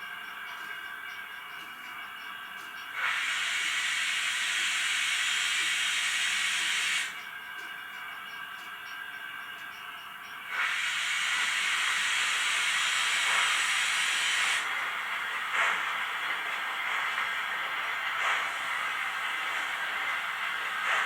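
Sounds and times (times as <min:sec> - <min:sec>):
steam hissing: 0:02.3 - 0:07.4, 0:10.4 - 0:21.0
steam puff: 0:03.0 - 0:07.2, 0:10.5 - 0:21.0.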